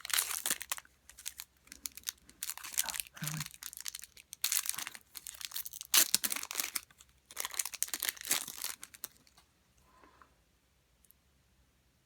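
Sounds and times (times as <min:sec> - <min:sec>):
foil wrapper crinkling and tearing: 0:00.0 - 0:09.4.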